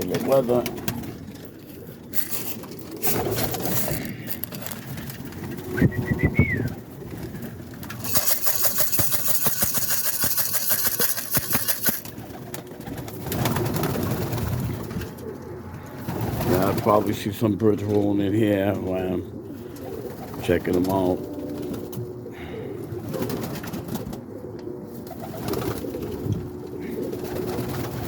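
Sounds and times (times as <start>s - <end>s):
pigeons cooing: 0.0s - 28.0s
rapid clattering: 7.8s - 12.2s.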